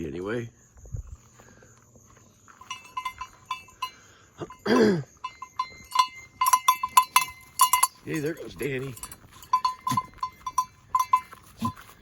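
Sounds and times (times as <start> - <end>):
goat bell clinking: 2.5 - 12.0.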